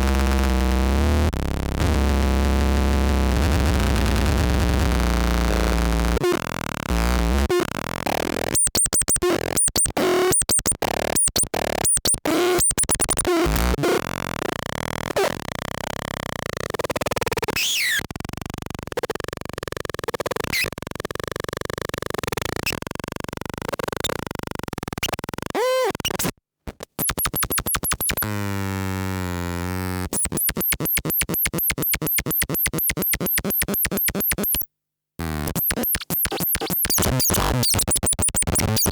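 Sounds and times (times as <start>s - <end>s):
glitchy electronic noise: 8.4s - 13.8s, 27.0s - 28.3s, 30.1s - 38.9s
electronic chirps: 27.0s - 28.2s, 30.2s - 34.7s, 35.6s - 38.9s.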